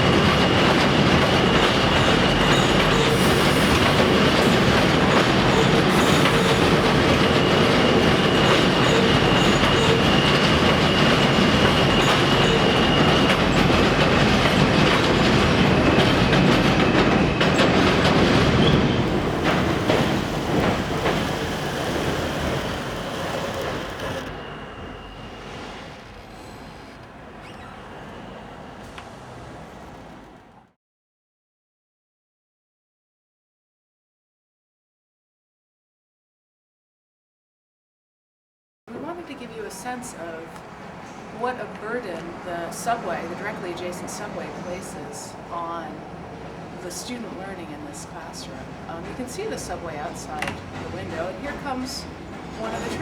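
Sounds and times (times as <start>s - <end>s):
elevated train rumble and clatter: 0.0s - 30.8s, 38.9s - 53.0s
high wheel squeal: 5.4s - 13.8s, 18.5s - 30.6s.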